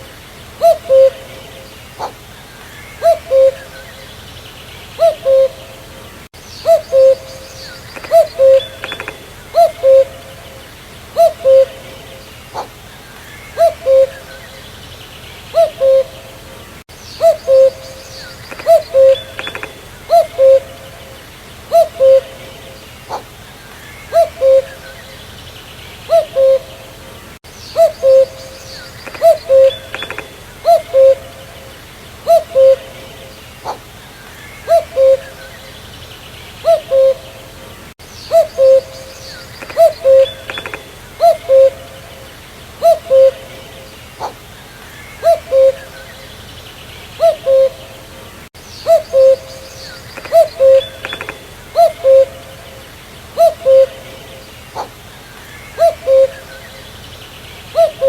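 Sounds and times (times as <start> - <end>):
cuckoo calling: 0.0 - 4.2, 5.0 - 14.8, 15.5 - 25.3, 26.0 - 35.9, 36.6 - 46.4, 47.2 - 57.0, 57.7 - 58.0
faint bird chirps: 38.0 - 46.6, 48.6 - 52.8.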